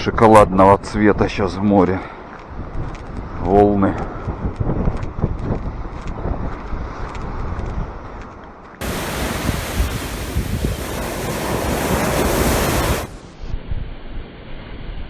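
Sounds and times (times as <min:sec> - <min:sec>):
wind gusting on microphone: 0:02.4 - 0:14.0
waves washing on shore: 0:08.8 - 0:13.4.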